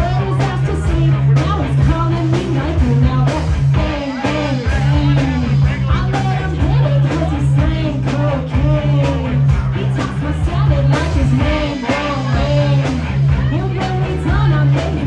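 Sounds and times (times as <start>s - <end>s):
drums: 0.0s - 15.0s
rap music with heavy bass beat: 0.0s - 15.0s
rock guitar: 0.0s - 15.0s.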